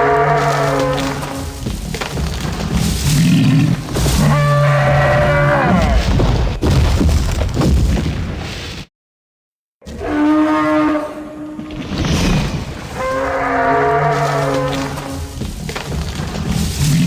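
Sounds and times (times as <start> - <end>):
creature deep rumbling bellows: 2.6 - 6.8.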